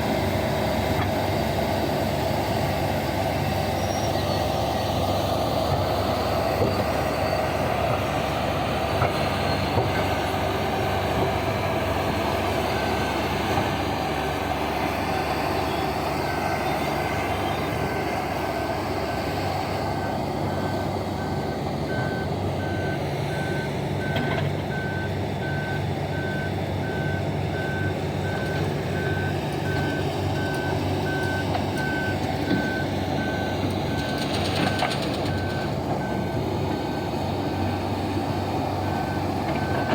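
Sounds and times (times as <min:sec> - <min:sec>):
diesel engines running under load: 0:00.0 - 0:39.9
reversing alarm beeping: 0:12.1 - 0:37.7, 0:38.8 - 0:39.9.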